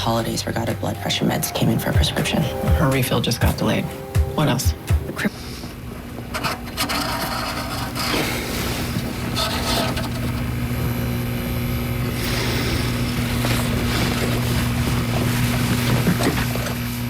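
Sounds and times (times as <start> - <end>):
fluorescent light buzzing: 3.4 - 17.0.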